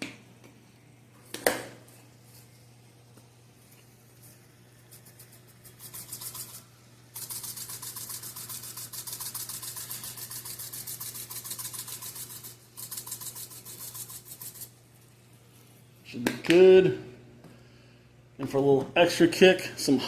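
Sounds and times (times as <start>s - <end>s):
spice shaker rattling: 4.4s - 14.8s.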